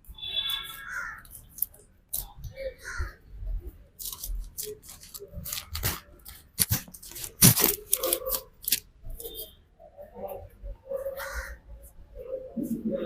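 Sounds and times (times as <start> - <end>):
scratchy rubbing: 4.0 - 9.5.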